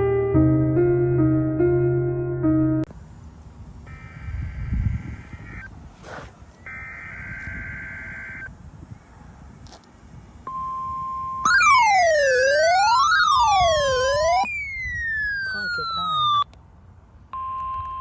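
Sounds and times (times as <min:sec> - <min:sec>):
falling whistle: 0:11.5 - 0:16.4
steady warning alarm tone: 0:11.5 - 0:16.4
two-tone data burst: 0:11.5 - 0:16.4
siren alarms wailing: 0:11.5 - 0:16.5.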